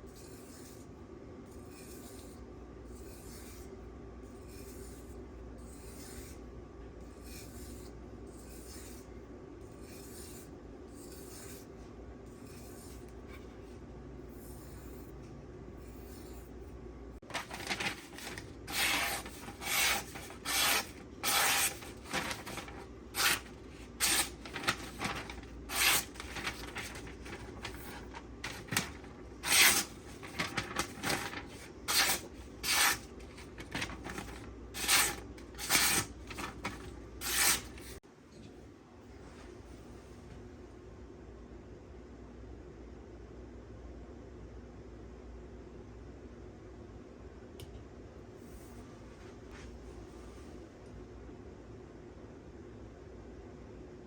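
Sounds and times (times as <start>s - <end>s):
knife scraping on sharpening stone: 18.7s - 21.8s, 31.9s - 33.0s, 37.2s - 37.6s.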